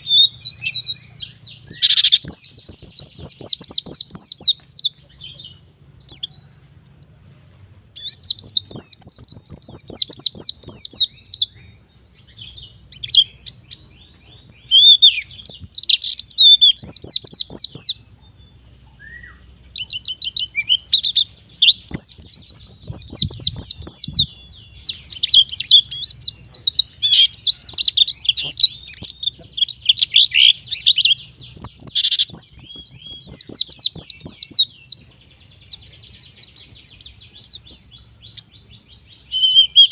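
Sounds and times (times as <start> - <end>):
bird high twittering song: 0.0 - 39.9.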